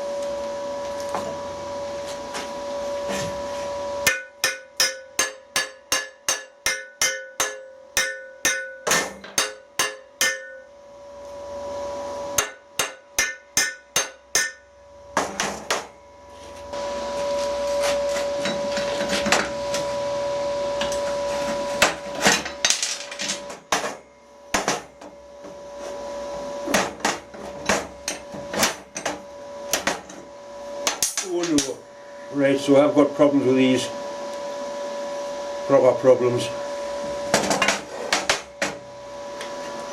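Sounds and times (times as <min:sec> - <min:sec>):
hammer striking steel: 0:04.0 - 0:10.8, 0:12.3 - 0:16.0.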